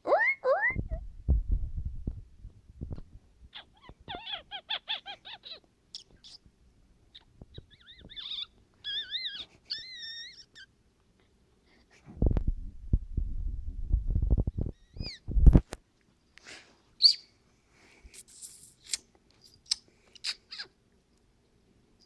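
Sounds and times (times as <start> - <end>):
rising mouth squeak: 0.0 - 1.0, 7.5 - 10.7, 14.7 - 15.3, 17.0 - 17.3
sharp mouth clicks: 18.2 - 20.7.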